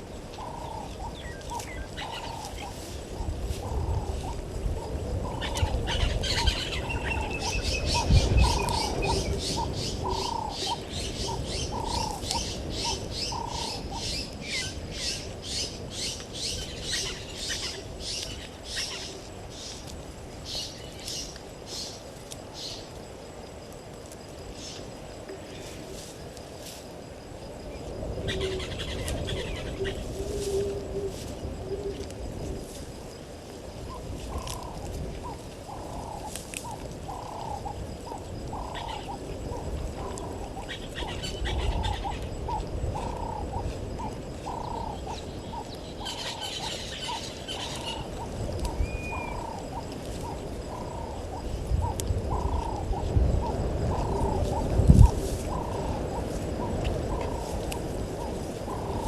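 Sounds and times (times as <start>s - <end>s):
birds chirping: 0.3s - 3.0s, 5.2s - 19.8s, 37.1s - 51.6s.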